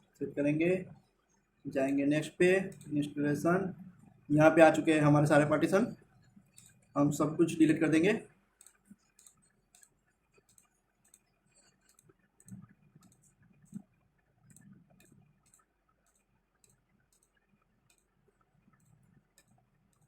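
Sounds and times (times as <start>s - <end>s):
faint light clicks: 8.6s - 20.0s.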